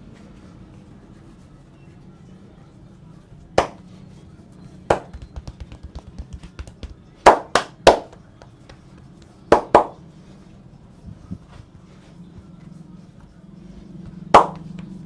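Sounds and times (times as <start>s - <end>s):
chopping taps on body: 3.6s - 3.8s, 4.9s - 10.0s, 14.4s - 14.9s
hands striking body: 3.6s - 3.8s, 4.9s - 10.0s, 14.4s - 14.9s.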